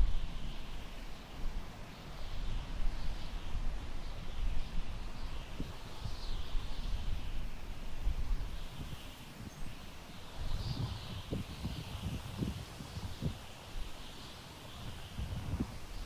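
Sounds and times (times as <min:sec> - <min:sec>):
wind through tall grass: 0:00.0 - 0:16.0
wind buffeting microphone: 0:03.6 - 0:14.0, 0:14.7 - 0:16.0.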